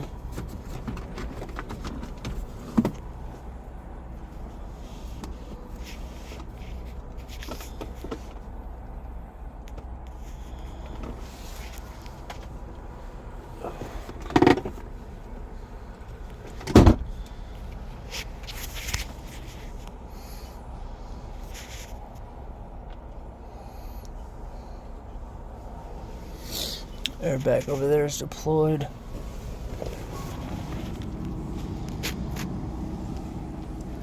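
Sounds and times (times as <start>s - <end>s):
light clicks and rustles: 0.0s - 13.2s, 13.8s - 20.0s, 28.9s - 34.0s
steady low rumble: 0.0s - 34.0s.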